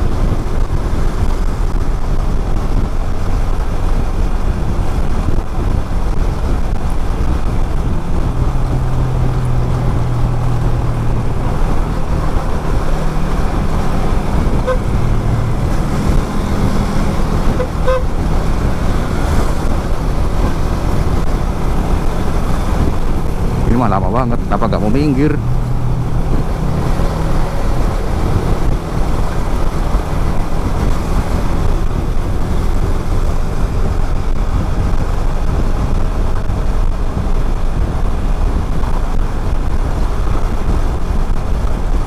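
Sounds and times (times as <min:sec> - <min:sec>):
motorcycle engine running: 0:00.0 - 0:42.0
road noise of vehicles: 0:00.0 - 0:42.0
wind buffeting microphone: 0:00.0 - 0:42.0
short horn toots: 0:14.5 - 0:15.0, 0:17.5 - 0:18.2.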